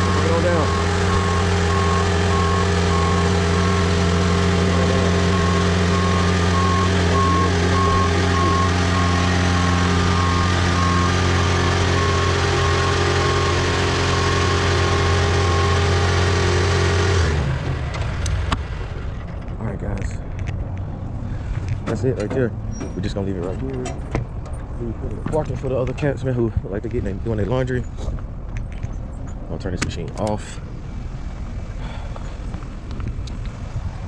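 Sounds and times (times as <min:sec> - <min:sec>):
rapid alarm beeping: 0:00.0 - 0:16.1
diesel engine running: 0:00.0 - 0:29.4, 0:30.2 - 0:34.0.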